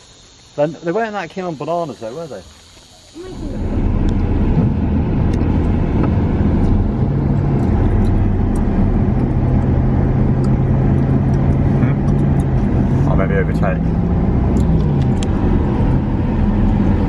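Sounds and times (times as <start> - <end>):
car engine hum: 0.0 - 17.0
road noise: 0.0 - 17.0.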